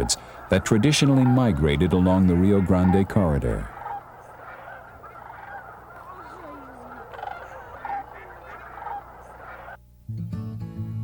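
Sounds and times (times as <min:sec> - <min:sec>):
waterfowl flock honking: 0:00.0 - 0:09.8.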